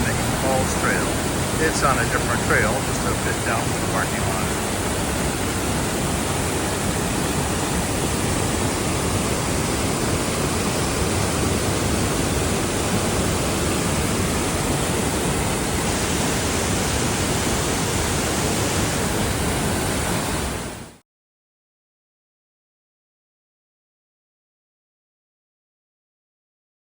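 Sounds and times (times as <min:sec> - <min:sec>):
waterfall roaring: 0:00.0 - 0:20.9.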